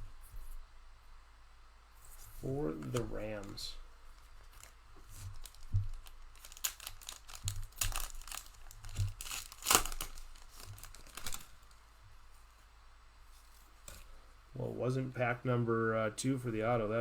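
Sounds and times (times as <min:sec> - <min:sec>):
plastic wrapper crinkling and tearing: 0:02.8 - 0:11.8.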